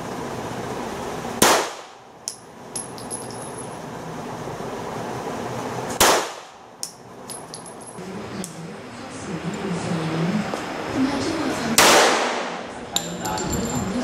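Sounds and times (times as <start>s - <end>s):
handgun shots: 1.4s - 1.9s, 6.0s - 6.5s, 11.8s - 12.6s
light metallic clinks: 2.3s - 3.8s, 12.9s - 14.0s.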